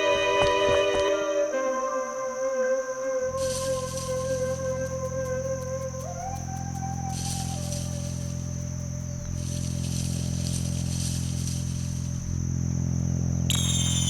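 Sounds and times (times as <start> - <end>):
crickets trilling: 0.0 - 14.0
low sustained drone: 0.0 - 14.0
thin held tone: 13.5 - 14.0.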